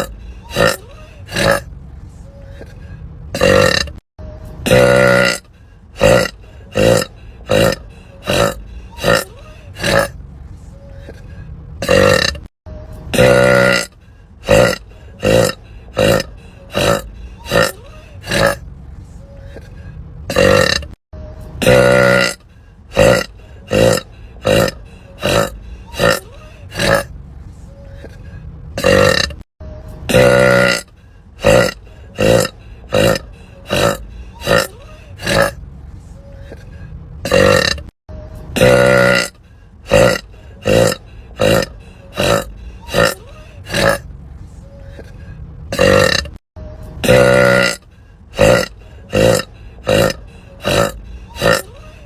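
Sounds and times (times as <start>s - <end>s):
woman burping: 0.0s - 1.7s, 3.3s - 4.0s, 4.6s - 5.4s, 6.0s - 10.1s, 11.8s - 12.5s, 13.1s - 13.9s, 20.3s - 21.0s, 21.6s - 22.4s, 28.8s - 29.4s, 45.7s - 46.4s, 47.0s - 47.8s.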